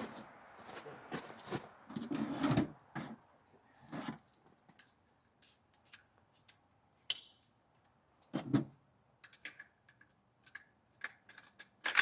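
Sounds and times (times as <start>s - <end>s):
metal parts and tools clicking: 4.2s - 8.0s, 9.2s - 12.0s.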